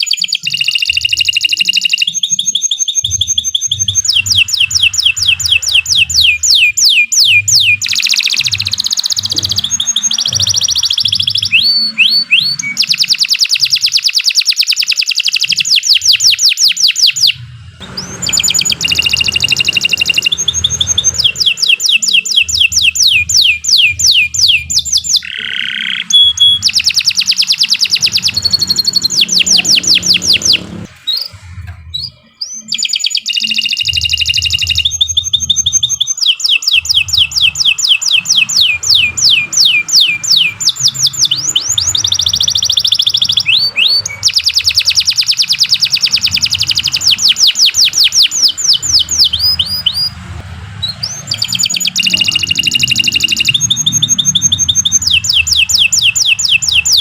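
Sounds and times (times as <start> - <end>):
canary singing trills: 0.0 - 50.2, 50.8 - 57.0
low hum: 17.4 - 23.7, 27.9 - 32.1, 48.3 - 57.0.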